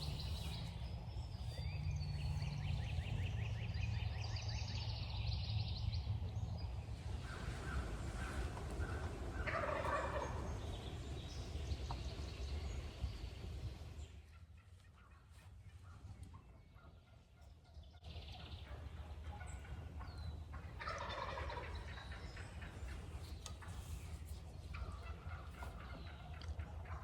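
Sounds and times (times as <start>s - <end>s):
turkey gobbling: 7.2s - 10.9s, 14.3s - 27.0s.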